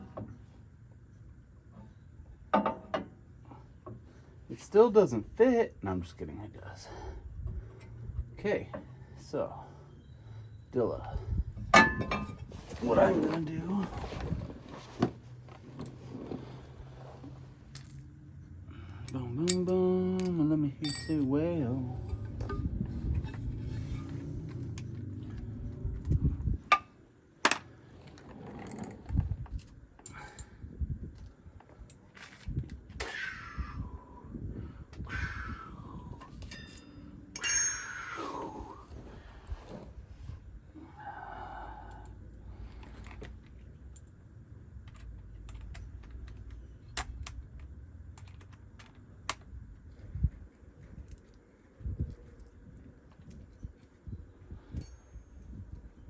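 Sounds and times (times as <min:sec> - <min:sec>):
low rumble: 0:21.8 - 0:26.7.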